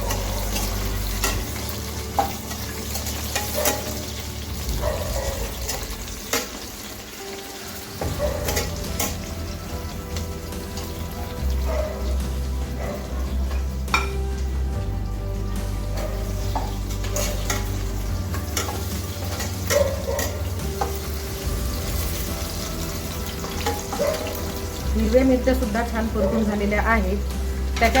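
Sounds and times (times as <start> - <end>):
food sizzling in hot oil: 0.0 - 28.0
spatula clicking against pan: 18.4 - 21.0.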